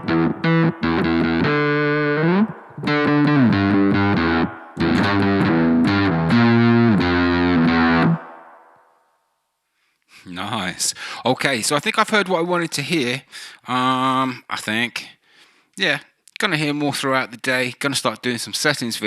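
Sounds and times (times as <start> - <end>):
electric guitar strummed chords: 0.0 - 8.5.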